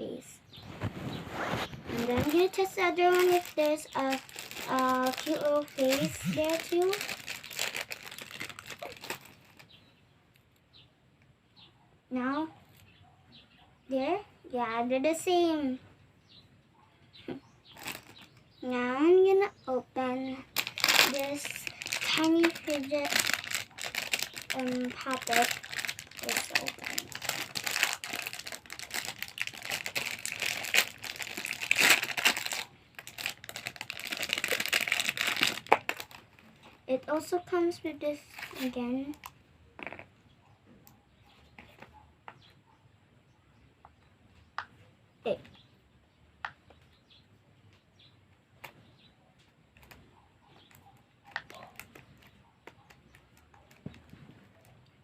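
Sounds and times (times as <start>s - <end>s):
plastic packaging crinkling: 0.6s - 9.8s, 17.7s - 18.4s, 20.4s - 36.9s, 50.6s - 54.7s.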